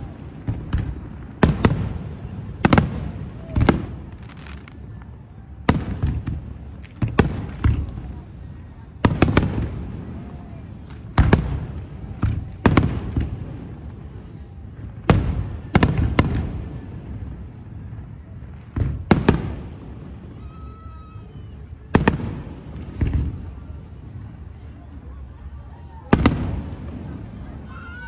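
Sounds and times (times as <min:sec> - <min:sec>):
fireworks bursting in bangs: 0:00.0 - 0:24.5, 0:26.0 - 0:28.0.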